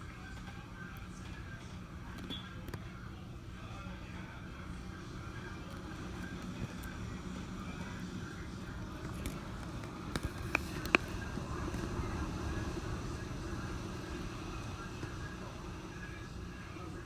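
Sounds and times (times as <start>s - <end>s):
hurricane wind and rain: 5.1s - 17.0s.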